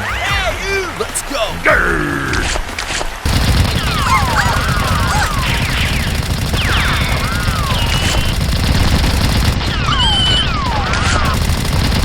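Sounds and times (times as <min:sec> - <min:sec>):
machine-gun fire: 0:02.9 - 0:12.0.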